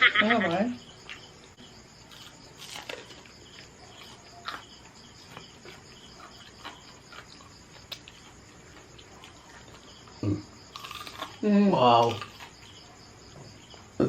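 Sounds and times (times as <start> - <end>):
insects chirping: 0.0 - 14.0
crunching crispy food: 2.0 - 9.9, 10.7 - 12.8.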